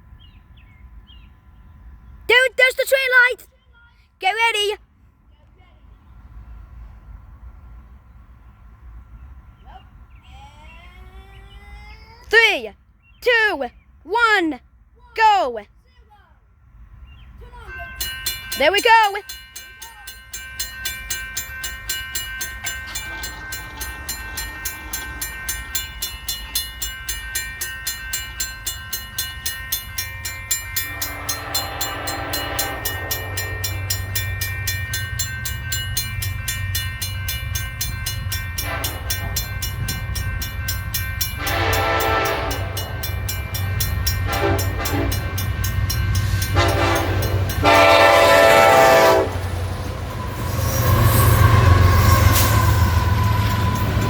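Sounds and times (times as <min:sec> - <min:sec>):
diesel locomotive rumble: 0:16.6 - 0:54.0
locomotive horn blasts: 0:31.0 - 0:34.2, 0:38.6 - 0:39.5, 0:41.4 - 0:43.0, 0:44.2 - 0:45.4, 0:46.4 - 0:49.6.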